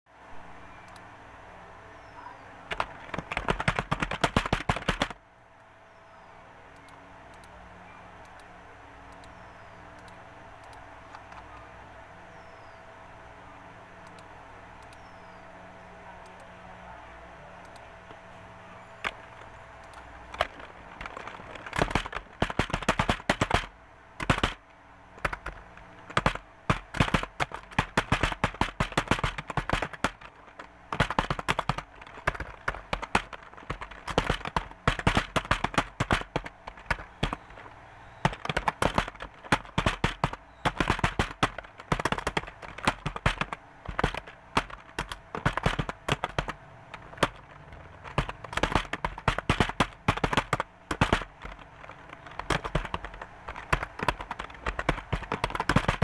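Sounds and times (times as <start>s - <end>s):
fast typing on keyboard: 2.6s - 5.2s, 19.0s - 56.0s.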